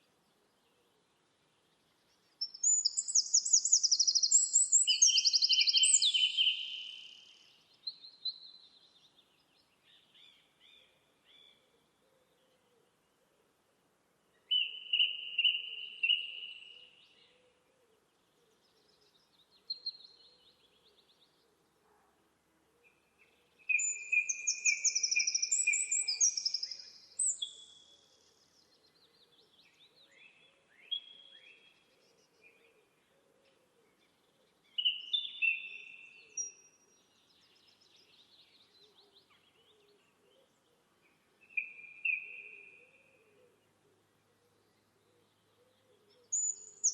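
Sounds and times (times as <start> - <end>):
faint bird chirps: 0.0 - 13.3, 14.4 - 22.2, 22.8 - 46.9
songbird trilling: 23.7 - 27.5.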